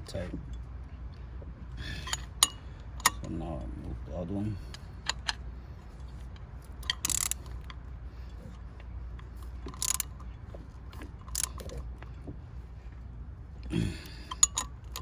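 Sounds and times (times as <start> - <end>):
low steady hum: 0.0 - 15.0
hand tools clicking on metal: 6.8 - 7.7, 9.6 - 10.1, 11.2 - 11.7, 14.3 - 15.0
ratchet bursts: 6.8 - 7.7, 9.6 - 10.1.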